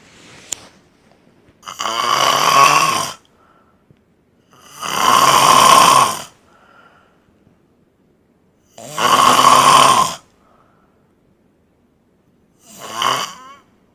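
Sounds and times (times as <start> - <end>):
man snoring loudly: 1.6 - 3.2, 4.5 - 6.4, 8.7 - 10.3, 12.6 - 13.6
faint breath: 3.3 - 4.0, 6.4 - 7.4, 10.3 - 11.2.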